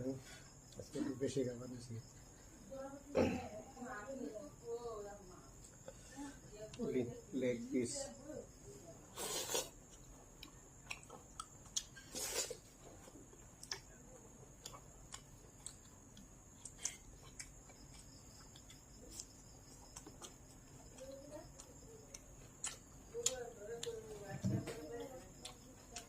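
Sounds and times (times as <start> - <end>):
chewing mouth clicks and smacks: 9.8 - 14.0, 14.6 - 24.0.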